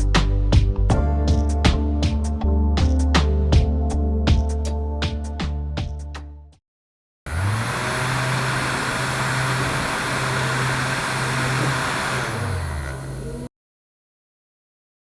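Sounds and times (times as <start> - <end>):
motor humming: 7.3 - 13.5.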